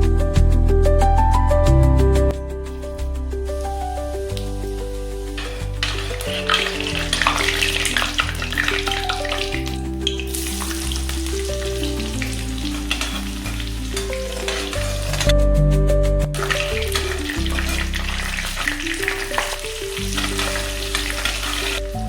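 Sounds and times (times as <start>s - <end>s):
background music: 0.0s - 22.0s
food sizzling in a pan: 5.4s - 15.4s, 16.4s - 22.0s.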